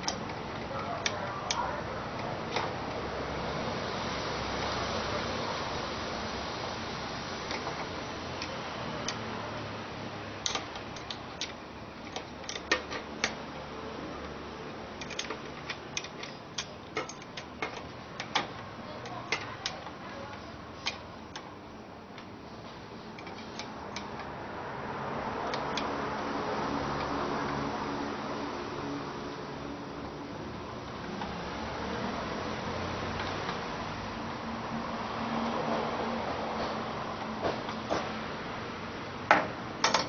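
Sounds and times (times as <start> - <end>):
clicks of fan parts handled: 0.0 - 3.0, 10.4 - 13.6, 14.2 - 24.4, 25.4 - 26.0, 39.3 - 40.0
steady background hiss: 0.0 - 40.0.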